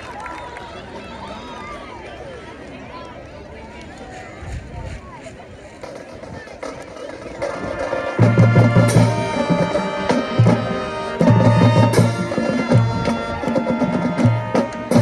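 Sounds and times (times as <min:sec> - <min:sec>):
marching band playing: 0:05.8 - 0:15.0
sustained brass chords: 0:07.6 - 0:15.0.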